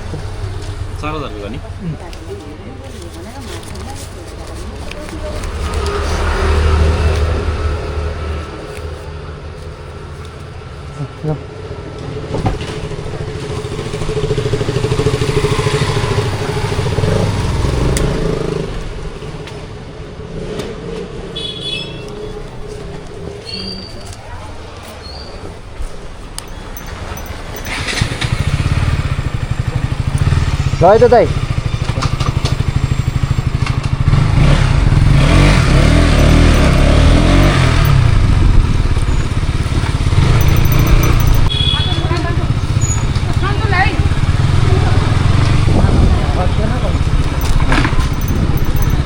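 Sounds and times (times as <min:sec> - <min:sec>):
motorcycle engine running: 0:26.5 - 0:49.0.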